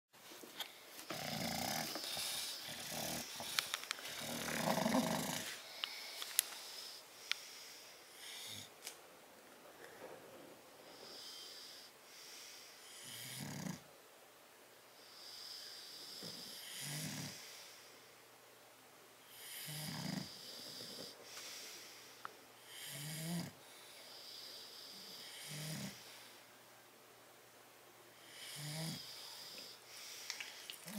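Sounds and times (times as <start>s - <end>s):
dog snoring: 1.0s - 5.8s, 12.8s - 13.8s, 15.1s - 17.7s, 19.3s - 21.2s, 22.7s - 26.4s, 28.2s - 29.8s
dog breathing with a hiss: 1.1s - 8.7s, 19.3s - 26.4s.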